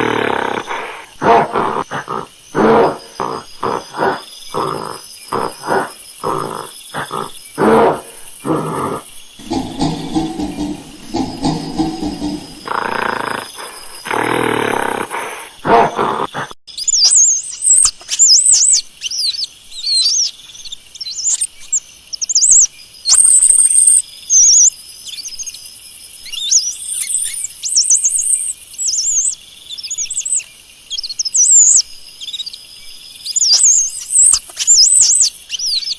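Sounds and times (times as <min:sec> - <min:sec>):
monkeys high-pitched chirps: 0:00.0 - 0:16.4
monkeys harsh calls: 0:00.0 - 0:16.5.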